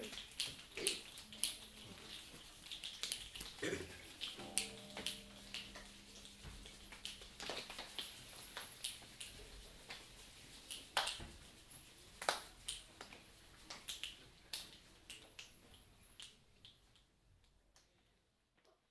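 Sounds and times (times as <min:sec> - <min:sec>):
fingers snapping: 0:00.0 - 0:02.1, 0:10.7 - 0:11.2, 0:12.2 - 0:15.6.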